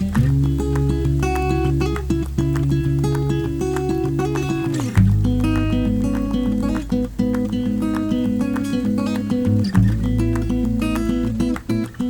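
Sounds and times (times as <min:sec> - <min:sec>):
bass line: 0:00.0 - 0:04.3, 0:05.0 - 0:06.9
acoustic guitar strumming: 0:00.0 - 0:12.0.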